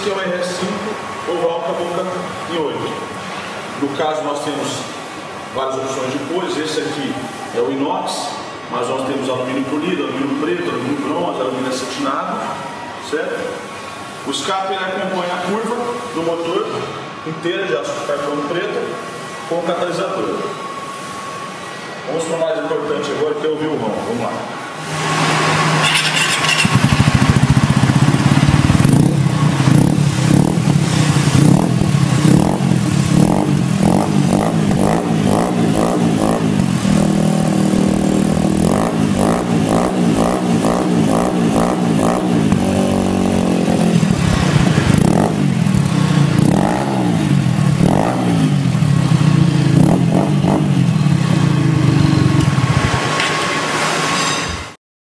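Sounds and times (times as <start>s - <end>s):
motorcycle engine revving: 24.9s - 53.8s.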